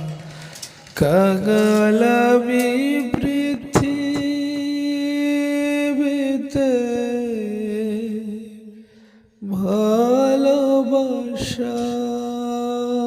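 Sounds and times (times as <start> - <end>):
person singing slow song: 0.0 - 13.0.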